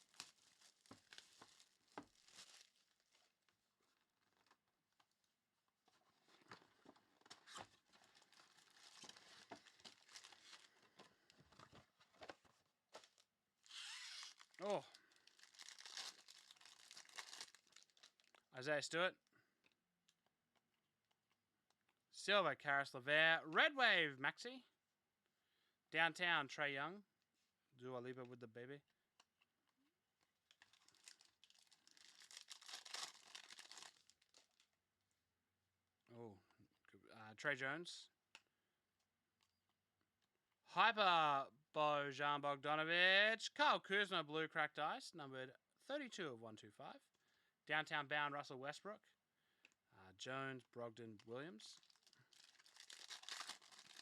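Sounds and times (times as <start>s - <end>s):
foil wrappers crinkling: 0.0s - 3.4s, 7.4s - 11.7s, 13.0s - 18.4s, 30.6s - 34.6s, 51.8s - 54.0s.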